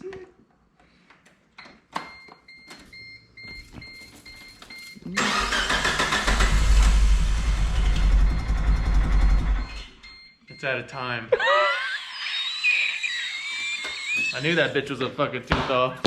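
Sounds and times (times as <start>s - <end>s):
car engine starting and rumbling: 5.2s - 10.0s.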